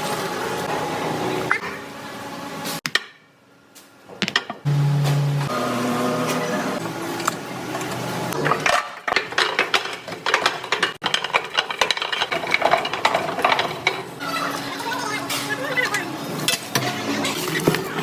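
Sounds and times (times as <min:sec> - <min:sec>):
machinery clicking and clattering: 0:07.2 - 0:15.4.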